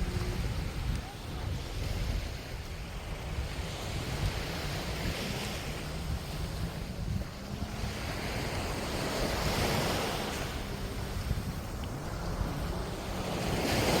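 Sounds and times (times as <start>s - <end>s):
sea waves washing onto beach: 0.0s - 14.0s
wind rumbling on microphone: 0.0s - 14.0s.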